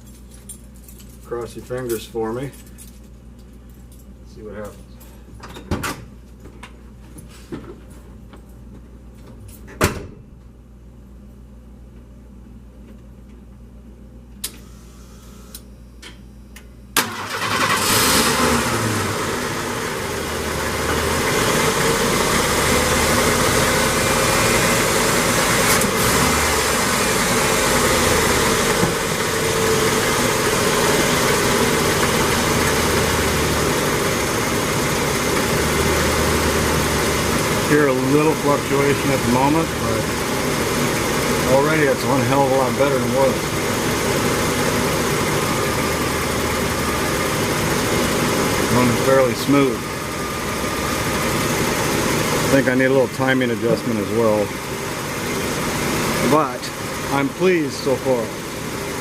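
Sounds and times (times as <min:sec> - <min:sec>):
truck engine starting and idling: 0:17.0 - 0:59.0.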